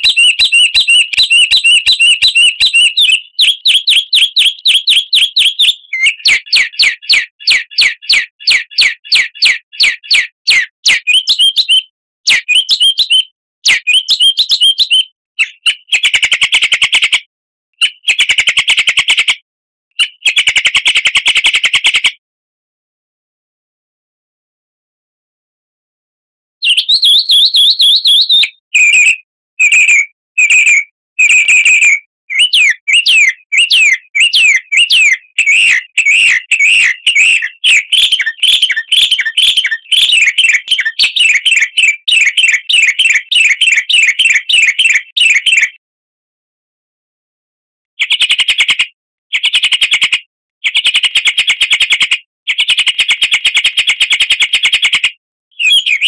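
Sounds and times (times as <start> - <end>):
songbird chirping: 0.0 - 13.3, 26.6 - 45.7
buzzy rattling bird trills: 33.6 - 45.6.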